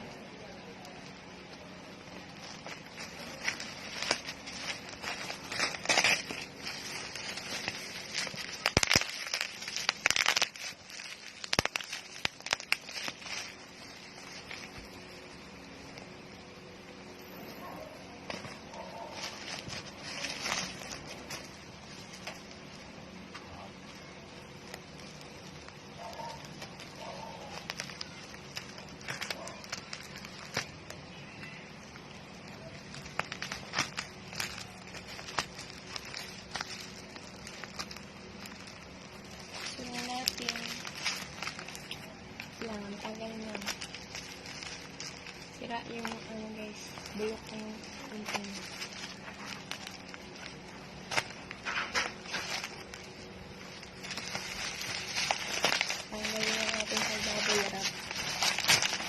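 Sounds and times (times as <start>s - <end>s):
steady low hum: 0.0s - 59.0s
plastic packaging crinkling: 0.1s - 59.0s.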